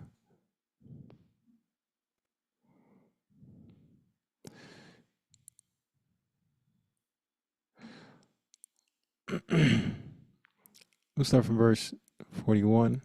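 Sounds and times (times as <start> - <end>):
man breathing: 0.2 - 1.4, 2.6 - 5.2, 7.8 - 8.4.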